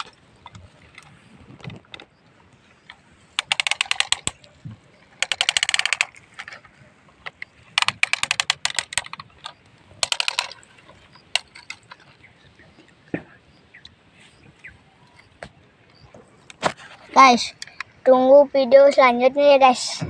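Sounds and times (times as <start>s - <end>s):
rapid plastic clicking: 0.0s - 2.1s, 3.4s - 4.6s, 5.2s - 12.0s.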